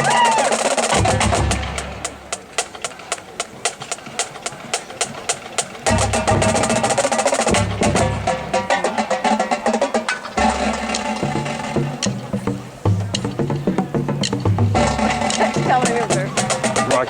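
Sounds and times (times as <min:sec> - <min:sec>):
rapid snare drum patterns: 0:00.0 - 0:17.0
tuned bass drums pitched notes: 0:05.9 - 0:08.8, 0:10.4 - 0:17.0
drum stick clicks: 0:10.1 - 0:17.0.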